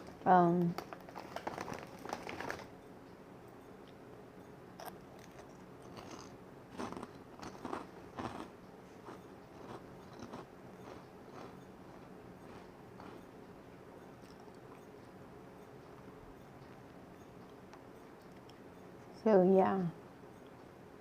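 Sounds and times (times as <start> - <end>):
person chewing food: 4.8 - 13.4, 14.0 - 15.2, 15.8 - 18.7.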